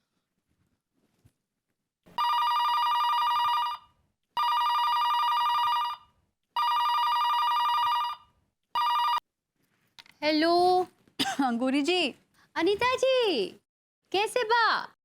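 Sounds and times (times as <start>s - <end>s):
telephone ringing: 2.2s - 9.2s.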